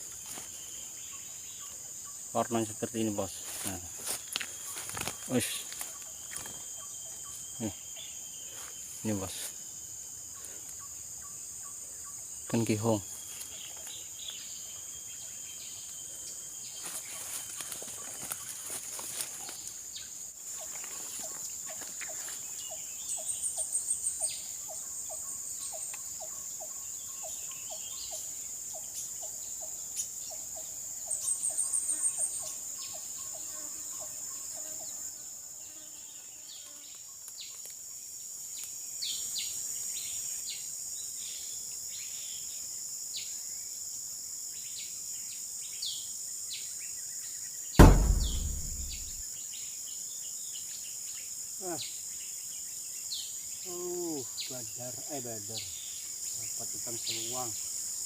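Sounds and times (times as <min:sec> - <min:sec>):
insects droning: 0:00.0 - 0:58.0
loud thump: 0:47.8 - 0:49.2
short knocking notes: 0:47.8 - 0:49.2.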